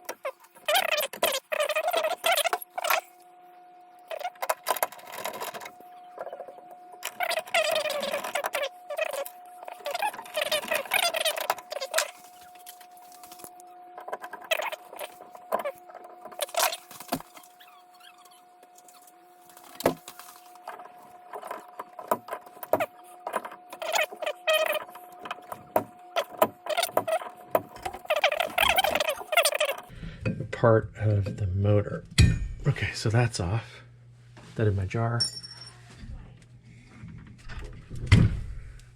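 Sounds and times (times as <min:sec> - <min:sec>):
faint steady hum: 0:00.0 - 0:38.9
tools and metal parts clattering: 0:35.2 - 0:35.8.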